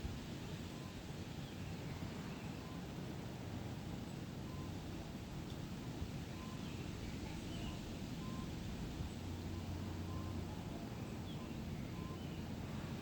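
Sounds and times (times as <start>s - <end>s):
bird calls: 6.3s - 13.0s.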